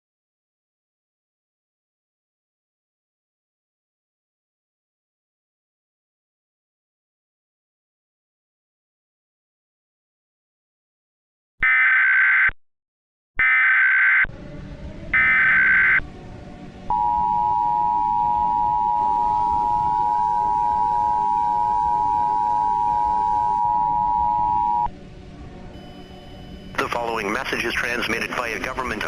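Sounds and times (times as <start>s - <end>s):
screeching data bursts: 15.2s - 16.0s
two-tone attention signal: 15.2s - 16.0s, 16.9s - 24.9s, 25.8s - 27.1s
faint static hiss: 15.7s - 29.0s.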